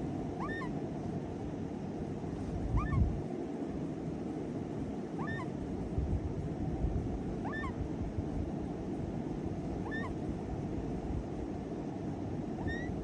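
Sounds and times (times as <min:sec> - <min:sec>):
parrot chick peeping: 0:00.4 - 0:00.8, 0:02.7 - 0:03.1, 0:05.2 - 0:05.6, 0:07.4 - 0:07.8, 0:09.7 - 0:10.2, 0:12.6 - 0:13.0.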